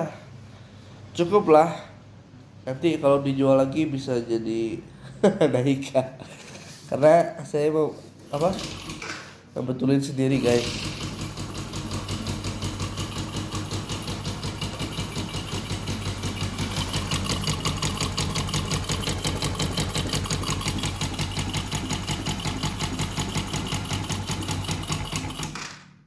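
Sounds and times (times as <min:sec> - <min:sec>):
motorcycle engine idling: 0:10.4 - 0:25.6.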